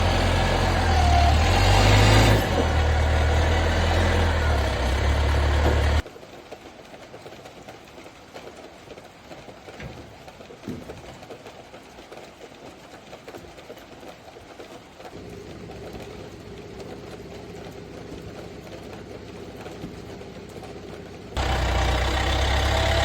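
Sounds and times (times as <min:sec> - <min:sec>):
forklift engine idling: 0:00.0 - 0:06.0, 0:15.4 - 0:23.0
faint rain patter: 0:00.0 - 0:23.0.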